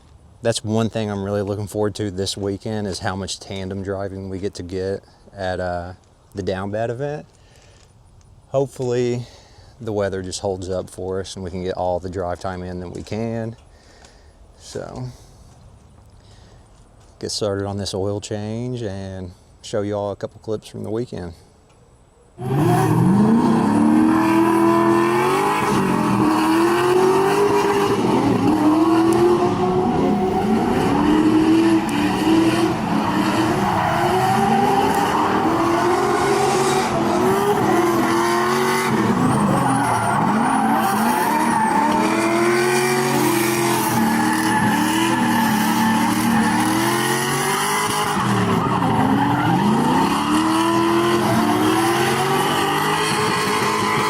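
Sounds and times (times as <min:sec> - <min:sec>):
car engine revving: 0:22.4 - 0:54.0
tyres screeching: 0:24.0 - 0:51.9.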